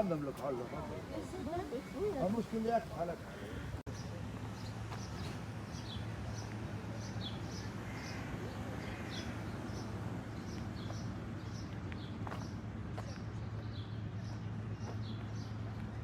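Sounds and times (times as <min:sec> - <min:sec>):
small birds chirping: 0:03.4 - 0:16.0.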